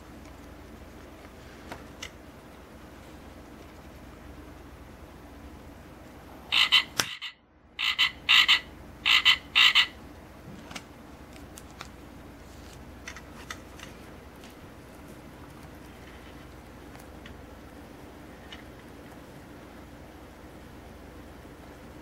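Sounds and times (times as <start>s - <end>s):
electronic frog croaks: 6.5s - 10.0s.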